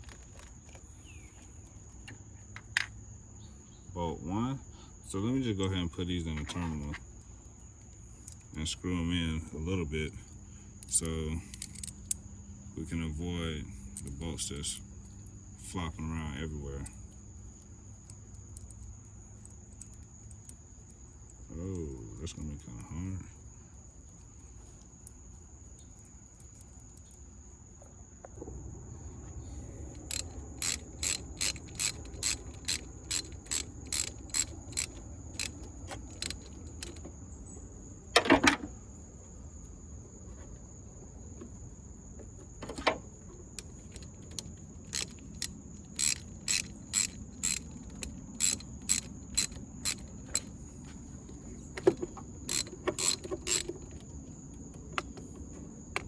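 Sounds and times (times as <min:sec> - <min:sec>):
ratchet wrench clicking: 0:10.8 - 0:12.2, 0:30.0 - 0:37.0, 0:43.6 - 0:50.6, 0:52.5 - 0:54.0.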